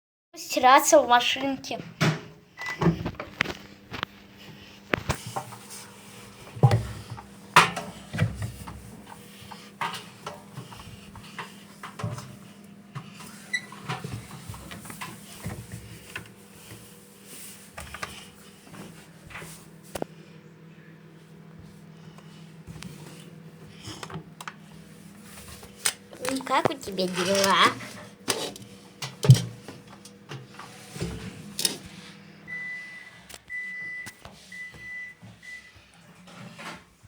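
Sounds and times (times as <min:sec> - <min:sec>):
knocks inside washing machine drum: 0:29.1 - 0:29.6.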